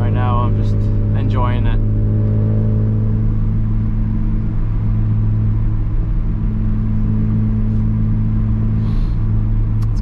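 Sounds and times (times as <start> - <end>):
loud exhaust drone: 0.0 - 9.9.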